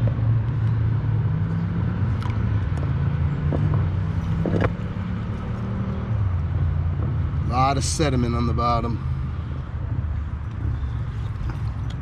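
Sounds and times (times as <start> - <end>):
boat motor running at low speed: 9.4 - 12.0.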